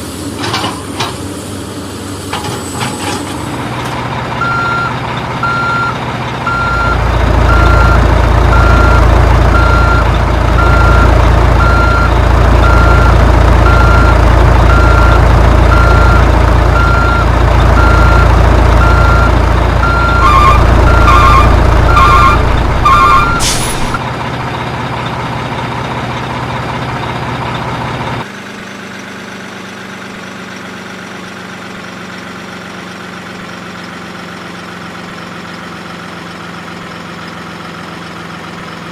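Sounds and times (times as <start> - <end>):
heavy vehicle engine running: 0.0 - 38.9
reversing alarm beeping: 4.4 - 24.0
lower alarm beeping quickly: 10.6 - 24.0.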